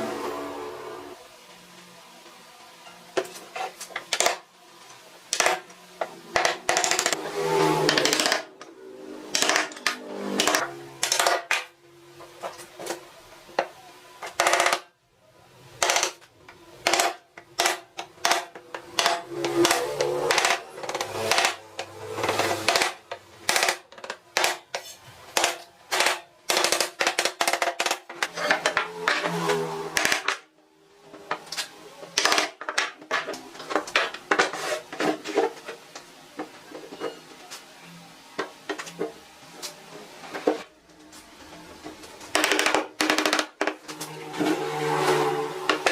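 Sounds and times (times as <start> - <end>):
hard objects knocking and clattering: 3.2 - 4.5, 5.3 - 8.7, 9.3 - 13.0, 13.6 - 14.9, 15.8 - 30.5, 32.1 - 35.8, 41.9 - 45.9.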